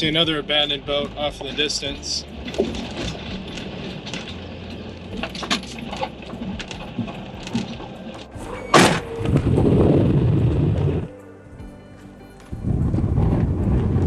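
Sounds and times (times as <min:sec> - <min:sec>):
wind buffeting microphone: 0:02.2 - 0:11.6, 0:12.5 - 0:14.0
loud thump: 0:08.4 - 0:09.6.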